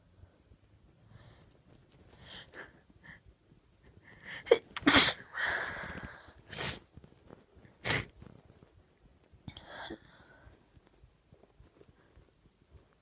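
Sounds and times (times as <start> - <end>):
person sneezing: 4.5 - 5.2.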